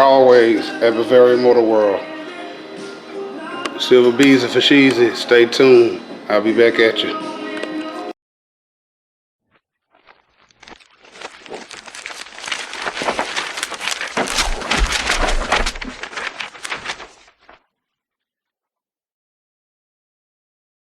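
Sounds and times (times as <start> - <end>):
rustling and crackling: 9.9 - 17.6.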